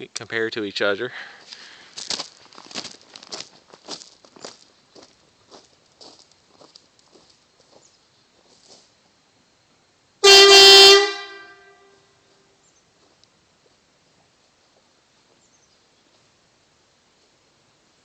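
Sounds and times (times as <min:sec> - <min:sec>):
vehicle air horn blast: 0:10.2 - 0:12.2.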